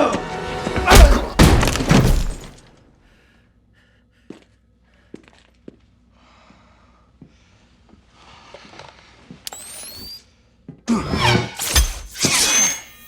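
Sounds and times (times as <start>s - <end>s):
loud crash with shattering: 0.8s - 2.7s.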